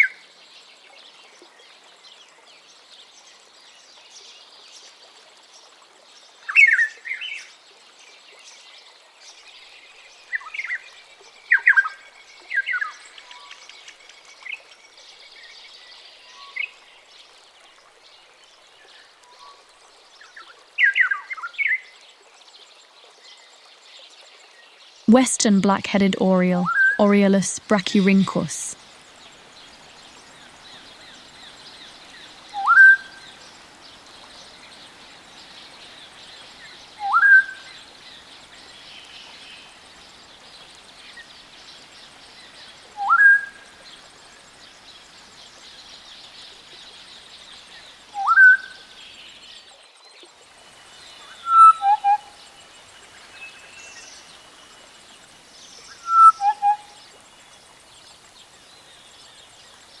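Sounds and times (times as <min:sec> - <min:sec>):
oriole whistling call: 0:28.9 - 0:49.0, 0:51.0 - 0:54.9, 0:55.7 - 0:57.2.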